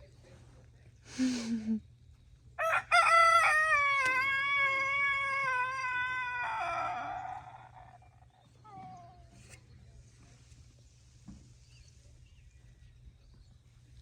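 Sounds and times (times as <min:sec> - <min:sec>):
rooster crowing: 0:02.6 - 0:09.0.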